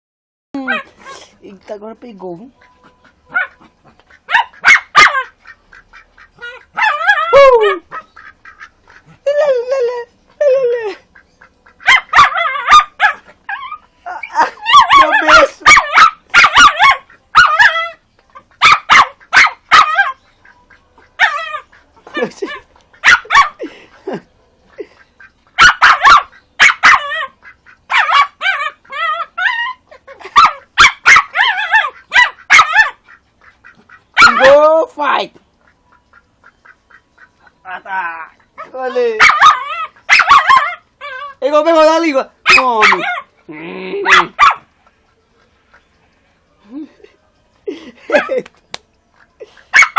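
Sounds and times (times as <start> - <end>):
dog yelping: 0.6 - 1.3, 2.8 - 5.6, 6.4 - 8.2, 11.8 - 20.2, 21.2 - 23.7, 25.6 - 33.2, 34.1 - 34.8, 37.6 - 41.8, 42.4 - 43.4, 44.0 - 44.7
duck quacking: 2.2 - 9.3, 11.1 - 13.4, 14.4 - 29.2, 30.0 - 34.8, 35.6 - 40.6
dog barking: 3.3 - 5.4, 6.5 - 8.1, 11.8 - 13.8, 14.4 - 18.0, 18.6 - 20.2, 21.2 - 21.7, 22.5 - 23.6, 25.6 - 33.0, 34.2 - 34.6, 38.6 - 41.4, 42.5 - 43.3, 44.0 - 44.7.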